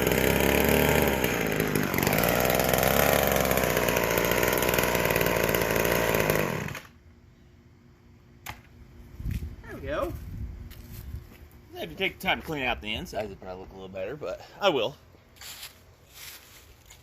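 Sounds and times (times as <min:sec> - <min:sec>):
chainsaw running at high revs: 0:00.0 - 0:06.9.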